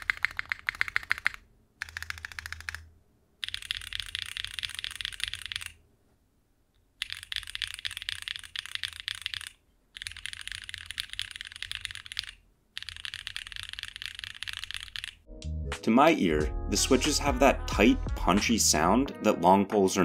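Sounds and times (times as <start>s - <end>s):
fast typing on mechanical keyboard: 0.0s - 5.8s, 7.0s - 15.2s.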